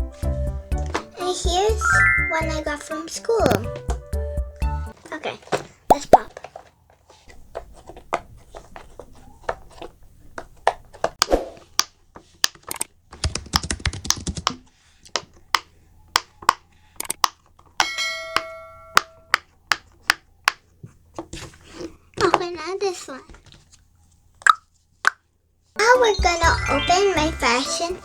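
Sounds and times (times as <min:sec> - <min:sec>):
brief steady tone: 0:01.8 - 0:02.5
fidget toy bubbles popping: 0:05.9 - 0:06.3, 0:24.4 - 0:25.2.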